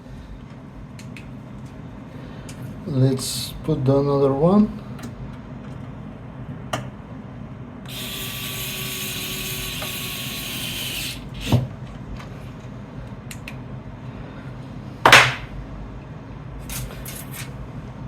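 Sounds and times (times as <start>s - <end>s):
electric screwdriver whirring: 7.9s - 11.6s.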